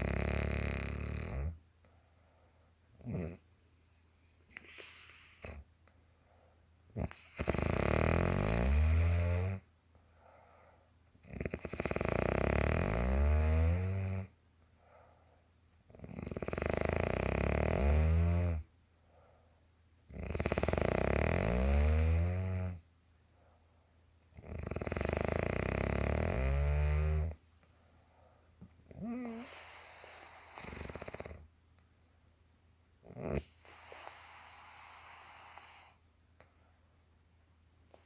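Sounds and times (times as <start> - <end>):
woman snoring: 0.0 - 1.6, 3.0 - 3.4, 7.0 - 9.6, 11.2 - 14.3, 16.0 - 18.6, 20.1 - 22.8, 24.4 - 27.4, 28.9 - 31.4, 33.1 - 36.0
quiet breaths: 0.0 - 31.5, 33.0 - 37.1.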